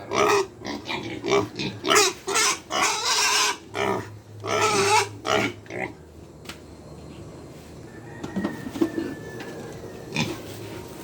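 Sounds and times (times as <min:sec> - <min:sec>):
pigs squealing: 0:00.0 - 0:06.0.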